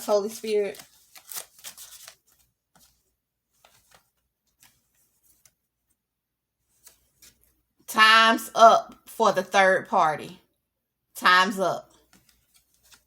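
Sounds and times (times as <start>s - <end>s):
cards clicking and rustling: 0.0s - 3.0s, 3.6s - 5.6s, 12.0s - 13.0s.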